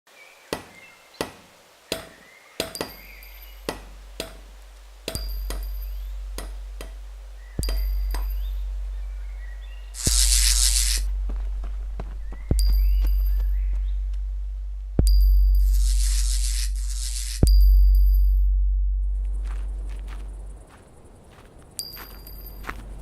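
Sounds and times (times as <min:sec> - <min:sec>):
low electrical hum: 0:03.2 - 0:20.7
loud burst of hiss: 0:10.0 - 0:11.1, 0:15.7 - 0:17.4.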